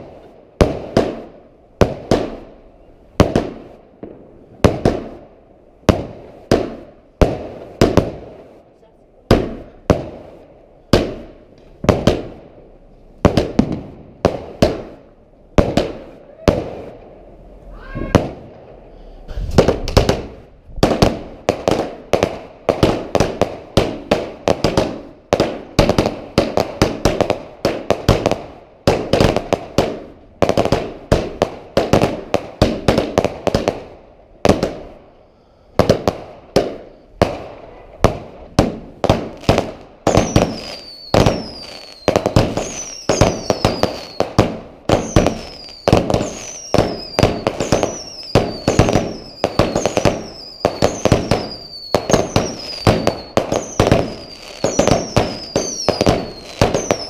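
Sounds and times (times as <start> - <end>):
fireworks bangs: 0.0 - 57.0
fireworks crackling: 0.0 - 57.0.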